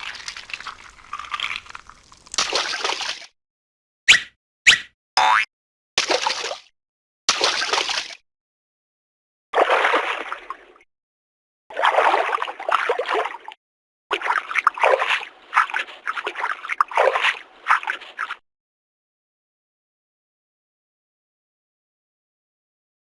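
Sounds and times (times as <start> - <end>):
water sloshing and splashing: 0.0 - 3.4, 6.0 - 6.7, 7.3 - 8.2, 9.6 - 10.9, 11.7 - 18.4.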